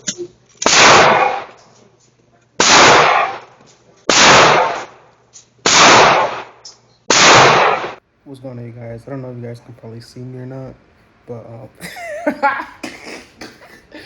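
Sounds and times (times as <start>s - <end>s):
gunshots: 0.6s - 1.6s, 2.6s - 8.0s.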